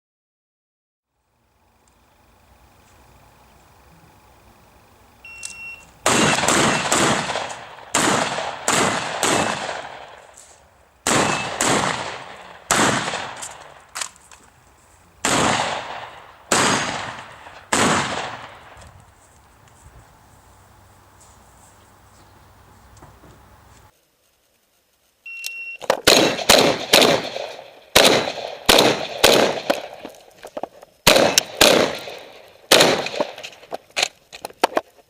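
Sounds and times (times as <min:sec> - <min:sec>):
shot timer beep: 0:05.2 - 0:05.9, 0:11.2 - 0:11.6, 0:25.3 - 0:25.8
shotgun firing rapid shots: 0:06.0 - 0:10.2, 0:11.0 - 0:13.8, 0:15.2 - 0:18.8, 0:26.0 - 0:30.2, 0:31.0 - 0:33.7
shots hitting steel plates: 0:06.0 - 0:10.2, 0:11.0 - 0:13.8, 0:15.2 - 0:18.7, 0:26.0 - 0:30.1, 0:31.1 - 0:33.6.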